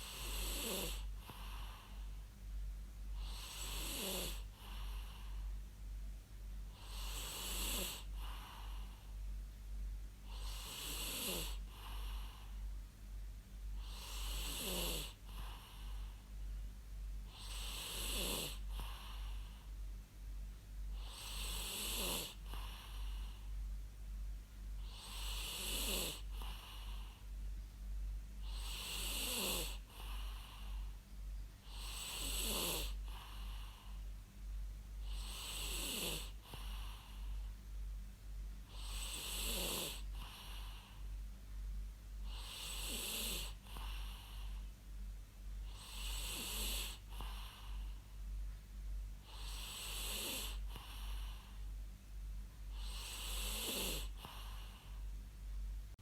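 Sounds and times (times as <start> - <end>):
person snoring: 0.0 - 2.0, 3.2 - 5.3, 6.8 - 8.9, 10.3 - 12.4, 13.8 - 16.0, 17.3 - 19.4, 21.0 - 23.3, 24.8 - 27.0, 28.4 - 30.9, 31.6 - 34.0, 35.0 - 37.4, 38.7 - 40.9, 42.3 - 44.6, 45.7 - 47.9, 49.3 - 51.6, 52.7 - 54.9
faint low hum: 0.0 - 56.0.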